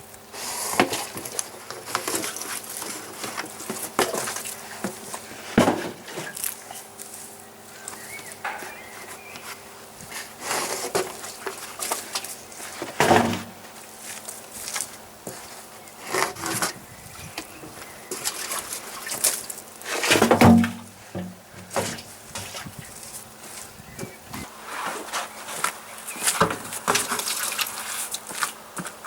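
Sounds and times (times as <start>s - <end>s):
tyres thudding: 3.9s - 6.4s, 12.8s - 13.8s, 19.9s - 22.1s
rubbery scrapes: 10.1s - 13.0s.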